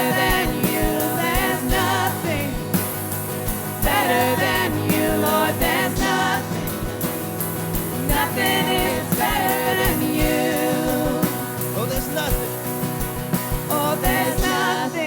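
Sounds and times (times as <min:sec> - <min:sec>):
lead singer singing: 0:00.0 - 0:15.0
steady drum beat: 0:00.0 - 0:15.0
worship band playing: 0:00.0 - 0:15.0.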